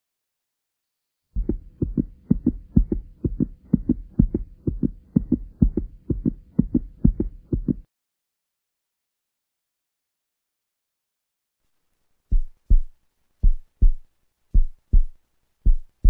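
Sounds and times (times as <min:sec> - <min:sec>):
fast heartbeat: 0:01.4 - 0:07.9, 0:12.3 - 0:16.0.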